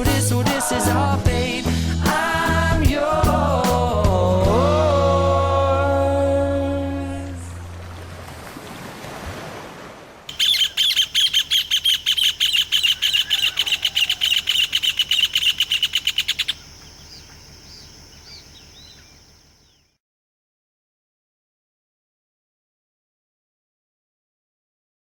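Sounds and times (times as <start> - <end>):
soft chirps: 10.3 - 19.9
bird song of sharp repeated notes: 10.3 - 20.0.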